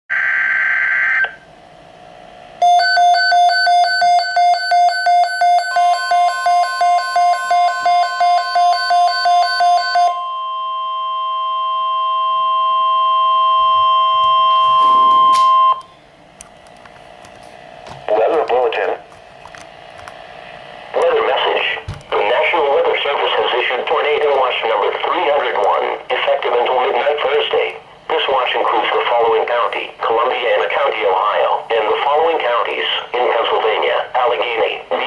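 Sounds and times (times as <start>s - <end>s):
steady warning alarm tone: 0.1s - 1.6s, 2.6s - 16.1s
rapid electronic alert beeps: 2.6s - 10.3s, 13.1s - 15.9s.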